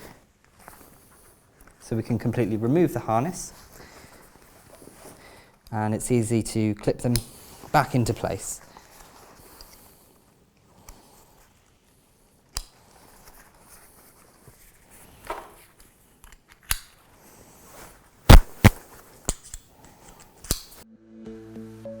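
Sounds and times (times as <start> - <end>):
fabric and strap handling: 0.0 - 5.8, 6.8 - 20.8
press-stud clips snapping: 16.2 - 17.0, 18.3 - 20.8
soft background music: 20.8 - 22.0.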